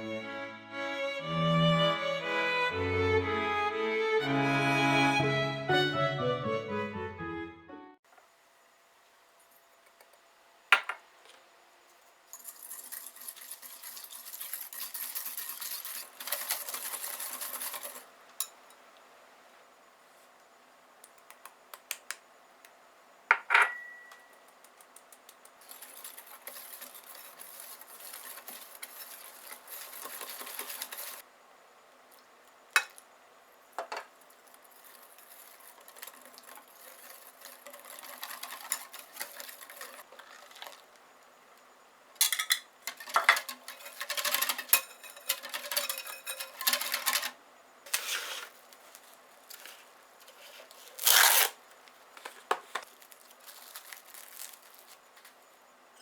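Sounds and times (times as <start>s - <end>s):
whisk scraping in a bowl: 12.3s - 18.5s, 25.6s - 31.2s, 34.3s - 40.9s, 42.9s - 50.8s
utensils clattering: 12.3s - 18.7s, 25.6s - 31.2s, 33.8s - 40.8s, 42.2s - 51.5s, 52.2s - 55.2s
sharp clink with ring: 23.6s - 24.3s.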